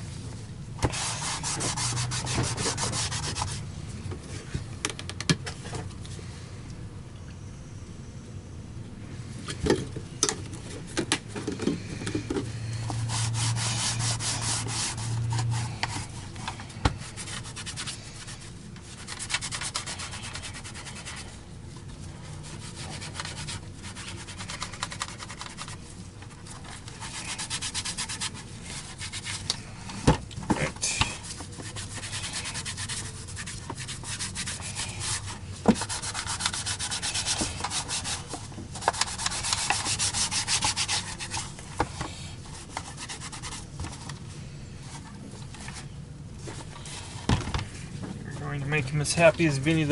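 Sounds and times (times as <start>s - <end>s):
cloth scrubbing plastic: 0.8s - 3.6s, 12.9s - 16.3s.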